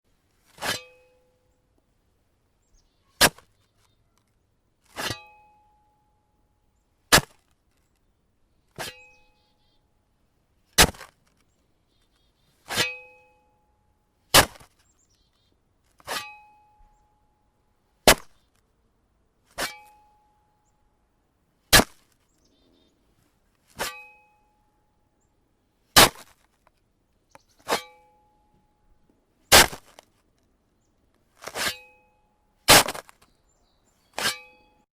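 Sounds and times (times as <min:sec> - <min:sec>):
shovel striking frozen snow: 0:00.5 - 0:01.0, 0:03.2 - 0:03.5, 0:04.9 - 0:05.4, 0:07.1 - 0:07.4, 0:08.8 - 0:09.2, 0:10.8 - 0:11.2, 0:12.6 - 0:13.0, 0:14.3 - 0:14.8, 0:16.0 - 0:16.4, 0:18.1 - 0:18.4, 0:19.5 - 0:20.0, 0:21.7 - 0:22.1, 0:23.7 - 0:24.2, 0:26.0 - 0:26.4, 0:27.6 - 0:28.0, 0:29.5 - 0:30.0, 0:31.4 - 0:32.0, 0:32.7 - 0:33.2, 0:34.2 - 0:34.8
shovel blade ringing: 0:00.5 - 0:01.6, 0:04.9 - 0:06.2, 0:08.8 - 0:09.6, 0:12.6 - 0:14.7, 0:16.0 - 0:17.5, 0:19.6 - 0:20.7, 0:23.8 - 0:24.8, 0:27.6 - 0:28.9, 0:29.5 - 0:30.0, 0:31.4 - 0:33.3, 0:34.0 - 0:34.9.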